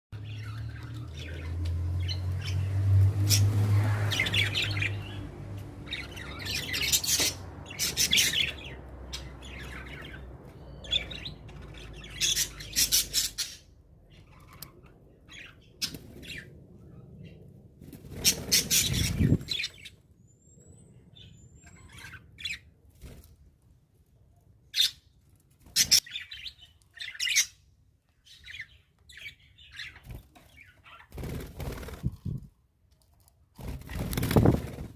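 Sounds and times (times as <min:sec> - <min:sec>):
budgerigars chirping: 0:05.9 - 0:13.6.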